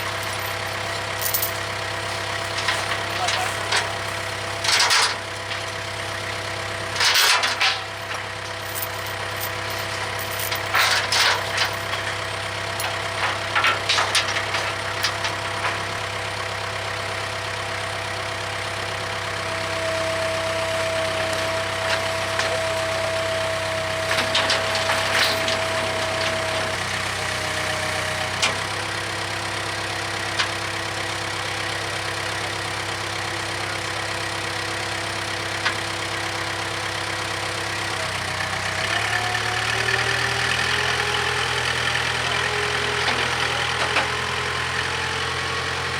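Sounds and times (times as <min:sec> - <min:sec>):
bucket clanks and scrapes: 0:00.0 - 0:05.8
diesel engine running: 0:00.0 - 0:45.9.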